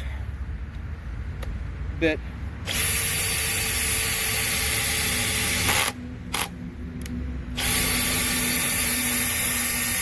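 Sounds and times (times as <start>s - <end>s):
hammer drill clutch ratcheting: 2.7s - 6.5s, 7.6s - 10.0s.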